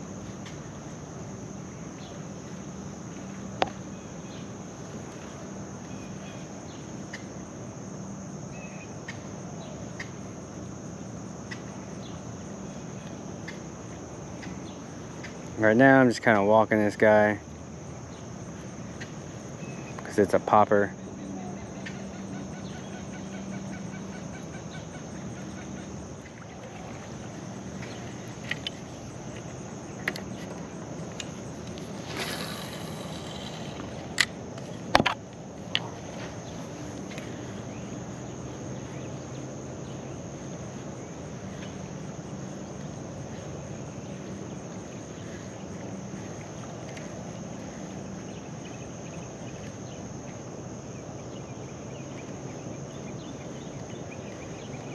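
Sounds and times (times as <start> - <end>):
insects droning: 0.0 - 54.9
sharp clicks and knocks: 34.1 - 35.9.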